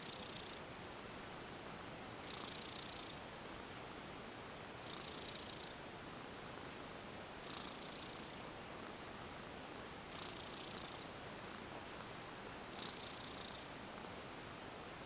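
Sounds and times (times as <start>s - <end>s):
cat purring: 0.0s - 0.6s, 2.2s - 3.2s, 4.8s - 6.8s, 7.4s - 14.2s
soft hiss: 0.0s - 15.0s.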